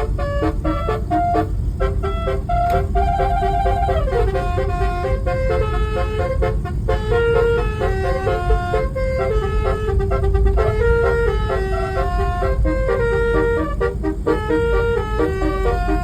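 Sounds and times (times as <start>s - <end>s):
melodic car horn: 0.0s - 16.0s
steady low rumble: 0.0s - 16.0s.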